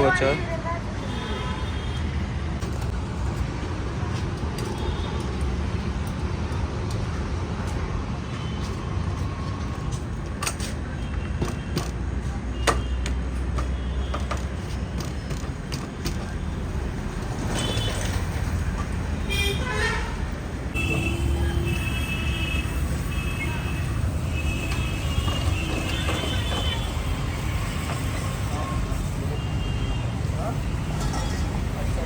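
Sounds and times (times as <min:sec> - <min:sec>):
road traffic rumble: 0:00.0 - 0:32.0
tyre-changing knocks and clicks: 0:09.9 - 0:16.5.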